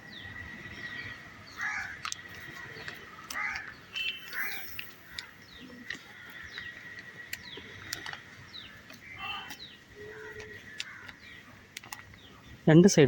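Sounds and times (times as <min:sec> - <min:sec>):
birds chirping: 0:00.0 - 0:13.0
sharp clicks: 0:01.9 - 0:12.3.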